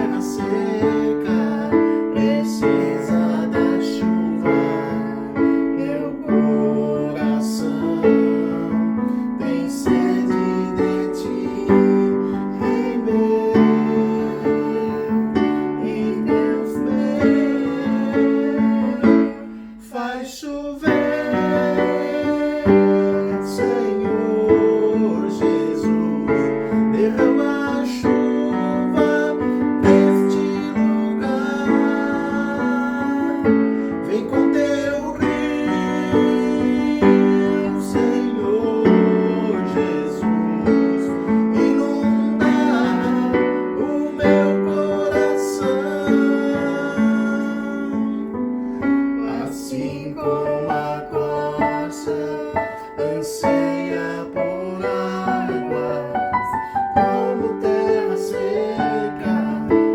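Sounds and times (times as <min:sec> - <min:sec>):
worship song piano chords: 0:00.0 - 0:59.9.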